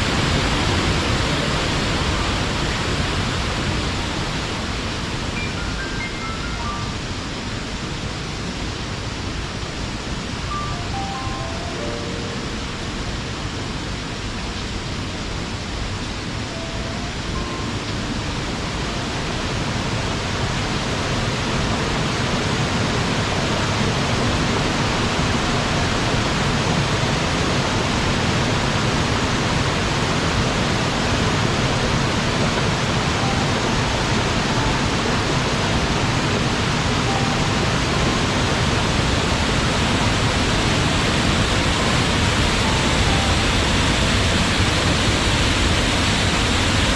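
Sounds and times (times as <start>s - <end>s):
waterfall rushing: 0.0s - 46.9s.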